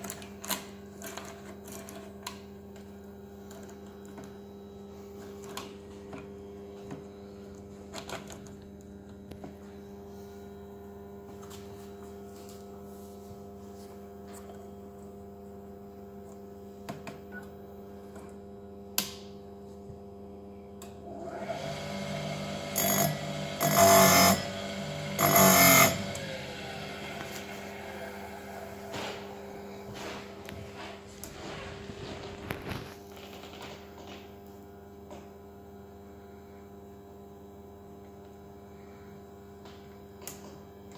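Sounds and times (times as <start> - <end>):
sharpening grinder humming: 21.2 - 30.9
grinding wheel on chain tooth: 22.7 - 26.2.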